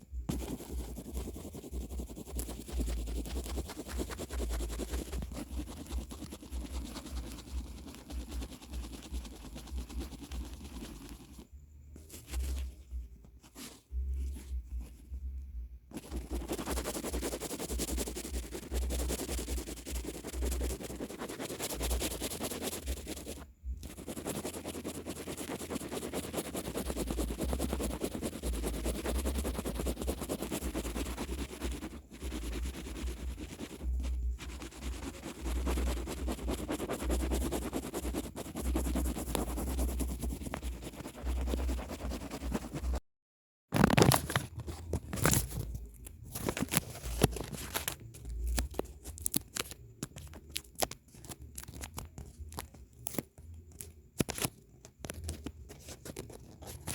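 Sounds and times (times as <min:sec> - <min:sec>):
paper rustling and scratching: 0:00.3 - 0:15.1, 0:15.9 - 0:43.0, 0:43.8 - 0:56.9
sharp paper crackles: 0:46.3 - 0:56.9.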